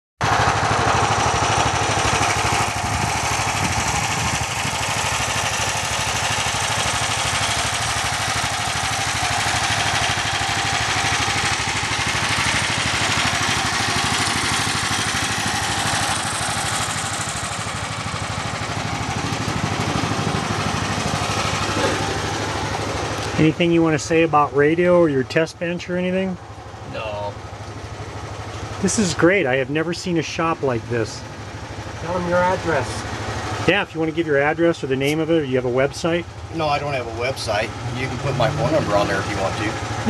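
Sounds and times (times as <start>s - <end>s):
engine idling: 0.2s - 40.0s.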